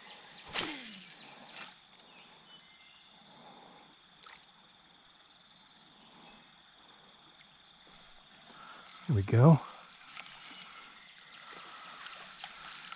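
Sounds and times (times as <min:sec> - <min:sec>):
splash in creek water: 0:00.4 - 0:01.8, 0:04.2 - 0:04.6, 0:08.6 - 0:12.9.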